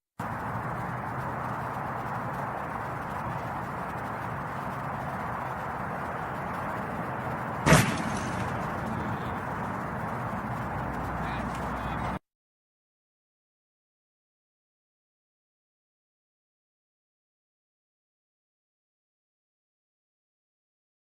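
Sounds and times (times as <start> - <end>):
steady rushing noise: 0.2 - 12.2
sharp loud knock: 7.7 - 8.5.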